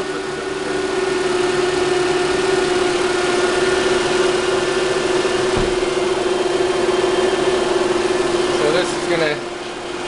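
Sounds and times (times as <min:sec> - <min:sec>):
car engine idling: 0:00.0 - 0:10.0
low thump: 0:05.4 - 0:06.1.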